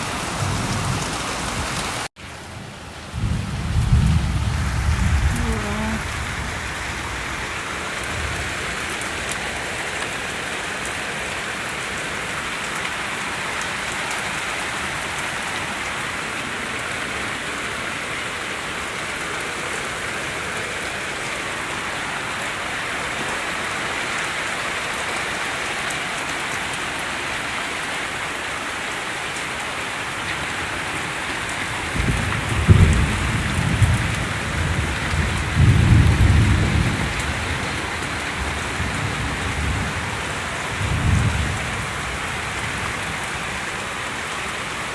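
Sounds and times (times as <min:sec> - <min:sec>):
heavy rain hissing: 0:00.0 - 0:44.9
low thunder rumbles: 0:03.1 - 0:08.5, 0:30.4 - 0:43.6.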